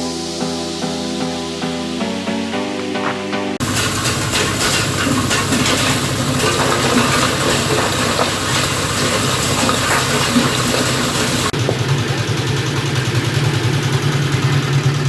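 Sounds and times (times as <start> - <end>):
background music: 0.0 - 3.6
soil grinding machine running: 3.6 - 15.0.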